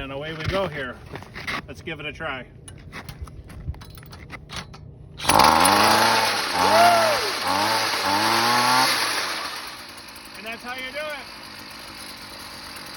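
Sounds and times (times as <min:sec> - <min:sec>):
cordless drill turning engine: 0:05.2 - 0:12.9
ice auger engine running: 0:05.2 - 0:12.9.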